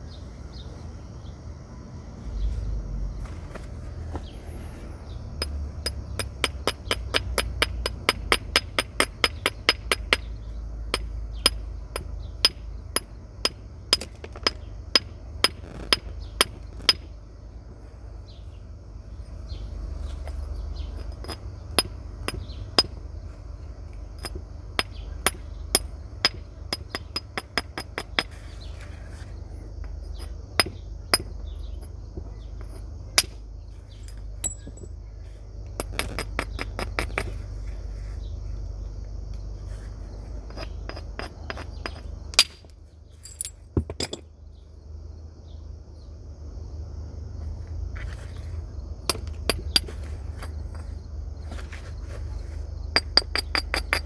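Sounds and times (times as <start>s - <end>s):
flint knapping strikes: 14.0s - 17.1s, 35.8s - 37.4s.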